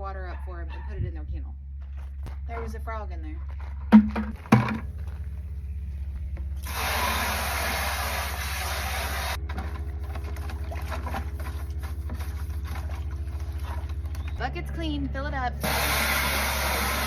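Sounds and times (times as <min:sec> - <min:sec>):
steady low hum: 0:00.0 - 0:17.0
garden hose spraying water: 0:06.6 - 0:14.0, 0:15.6 - 0:17.0.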